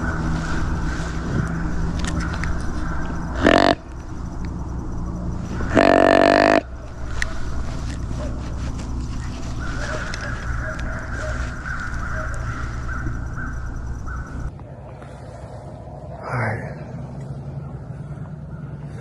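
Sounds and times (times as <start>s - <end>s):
deer call note: 0.0s - 14.5s.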